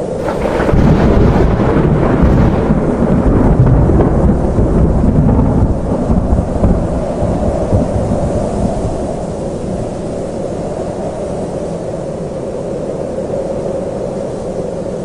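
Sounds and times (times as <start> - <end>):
rolling thunder: 0.0 - 10.7
rain: 0.0 - 15.0.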